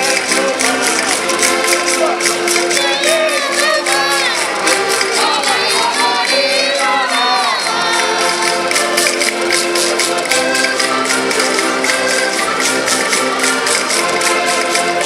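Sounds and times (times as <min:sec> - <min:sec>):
button accordions playing: 0:00.0 - 0:15.0
women singing folk tune: 0:02.7 - 0:09.2.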